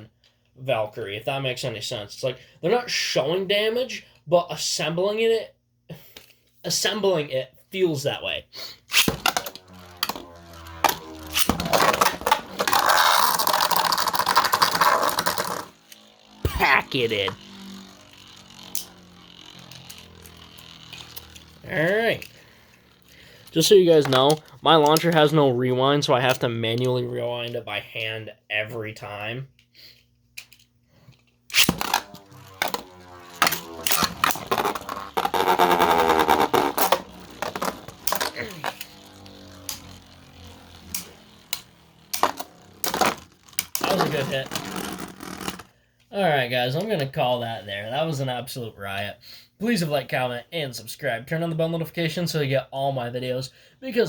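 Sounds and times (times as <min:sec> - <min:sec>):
sharp clashes of spinning tops: 0:08.9 - 0:23.1, 0:31.5 - 0:44.0
plastic parts clicking and rattling: 0:08.9 - 0:25.2, 0:30.4 - 0:45.7
spinning top launch rip: 0:08.9 - 0:25.4, 0:31.5 - 0:45.7
spinning tops grinding: 0:08.9 - 0:26.3, 0:31.4 - 0:45.7
spinning tops whirring: 0:08.9 - 0:26.4, 0:31.4 - 0:45.7.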